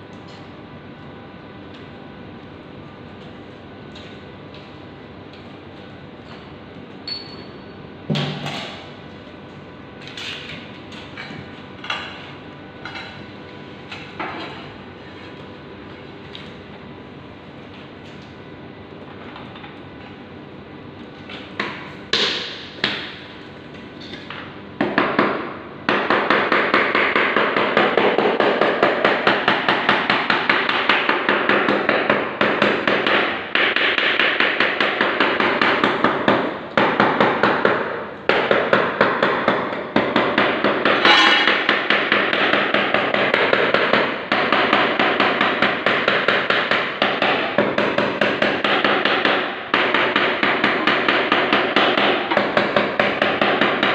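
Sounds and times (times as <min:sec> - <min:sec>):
rapid hammering on hard material: 0:24.8 - 0:53.9.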